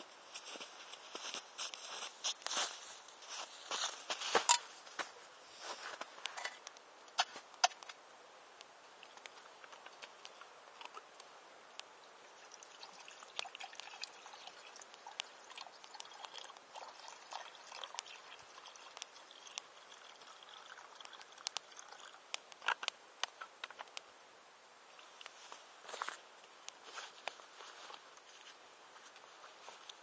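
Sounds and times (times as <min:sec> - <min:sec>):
campfire crackling and popping: 0:08.6 - 0:24.1
liquid trickling: 0:12.0 - 0:22.4.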